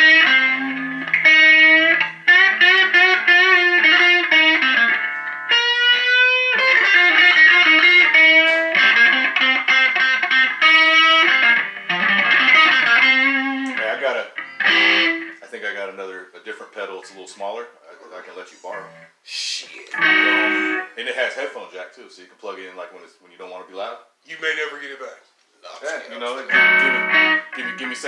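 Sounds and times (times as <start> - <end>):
electric guitar blues lead: 0.0 - 15.4, 18.7 - 19.2, 19.9 - 21.0, 26.1 - 28.0.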